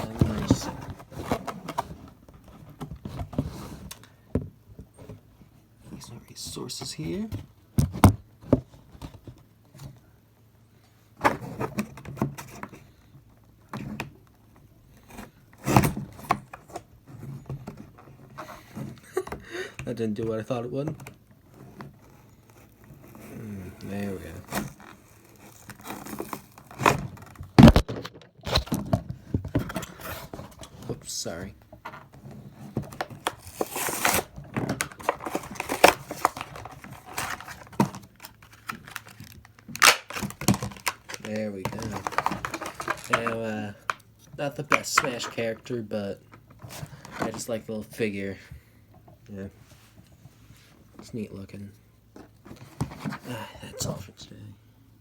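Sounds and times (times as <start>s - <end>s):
knife scraping packaging: 21.6s - 27.8s, 32.9s - 44.0s.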